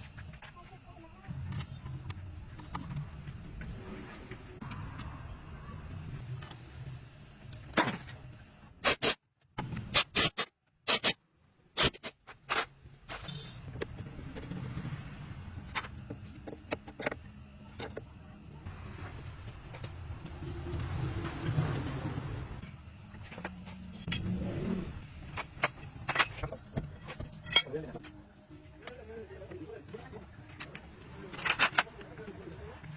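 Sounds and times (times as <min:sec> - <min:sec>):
metal tools knocking and clacking: 0:25.4 - 0:28.0.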